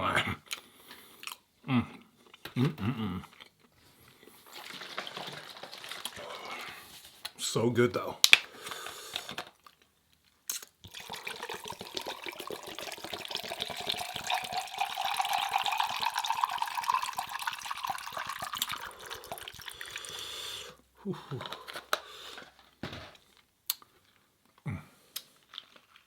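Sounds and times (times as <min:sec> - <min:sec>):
crackling fizz: 0:04.4 - 0:07.3, 0:10.5 - 0:20.5
drink pouring into glass: 0:10.8 - 0:20.4.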